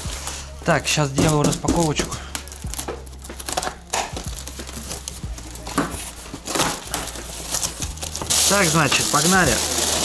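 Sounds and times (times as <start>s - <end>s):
packaging crinkling and rustling: 0.0s - 10.0s
packaging tearing: 0.0s - 10.0s.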